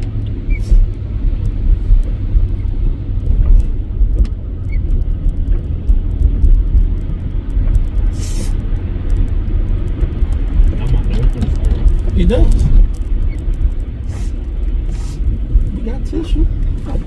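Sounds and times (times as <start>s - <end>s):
truck rumbling through snow: 0.0s - 17.0s
short hiss: 8.1s - 8.6s, 14.1s - 15.2s.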